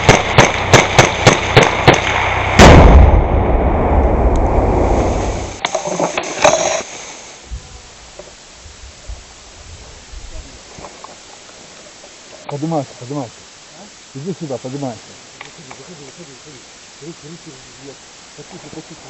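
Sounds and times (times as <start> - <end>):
rifle gunfire: 0.0 - 3.4
loud blast with low rumble: 0.0 - 5.6.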